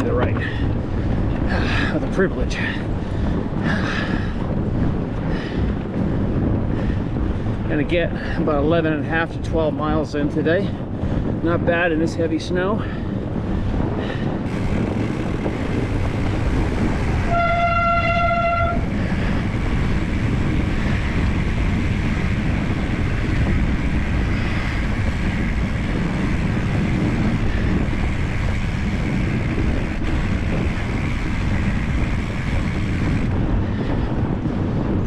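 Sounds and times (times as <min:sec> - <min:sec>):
wind buffeting microphone: 0:00.0 - 0:35.0
horn-like tone: 0:17.2 - 0:18.9.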